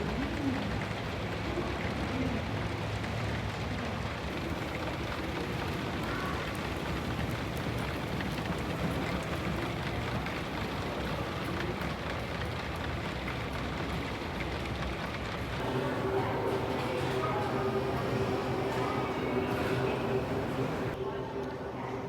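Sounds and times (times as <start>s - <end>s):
faint low hum: 15.6s - 21.9s.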